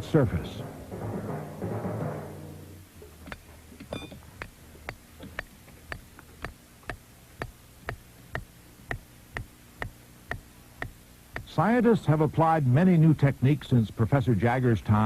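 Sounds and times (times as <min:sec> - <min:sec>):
faint low hum: 0:00.0 - 0:15.0
steady ticking: 0:03.2 - 0:11.6.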